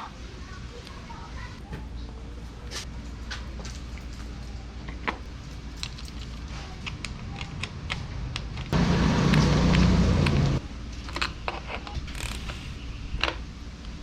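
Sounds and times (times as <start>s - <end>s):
loud mechanical hum: 0.0s - 14.0s.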